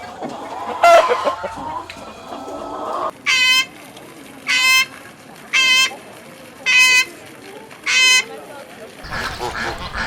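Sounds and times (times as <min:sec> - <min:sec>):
duck quacking: 0:09.0 - 0:10.0.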